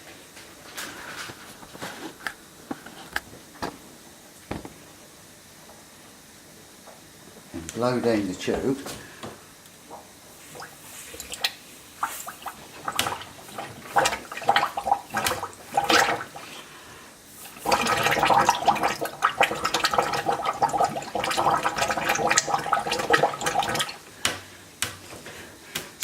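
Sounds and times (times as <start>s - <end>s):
water spluttering and gurgling in hose: 10.5s - 16.6s, 17.4s - 24.0s.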